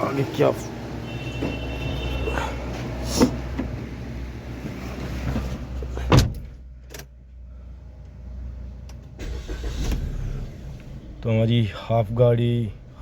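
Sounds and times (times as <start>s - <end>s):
low rumble: 9.2s - 13.0s.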